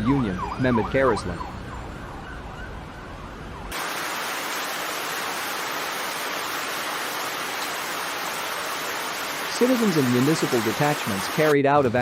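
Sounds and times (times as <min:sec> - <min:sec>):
rushing water: 0:03.7 - 0:11.6.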